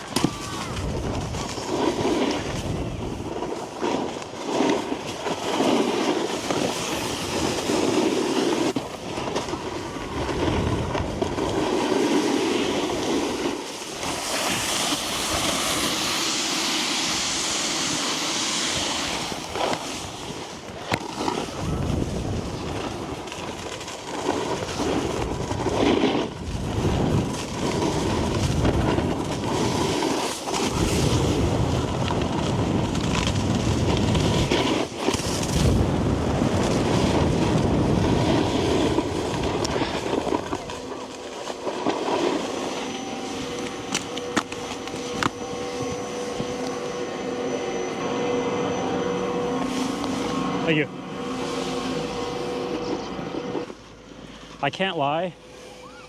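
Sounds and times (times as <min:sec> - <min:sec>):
snowboard grinding on snow: 0:00.0 - 0:56.0
wind buffeting microphone: 0:00.3 - 0:01.7, 0:21.4 - 0:23.3, 0:24.6 - 0:30.0, 0:30.7 - 0:41.0.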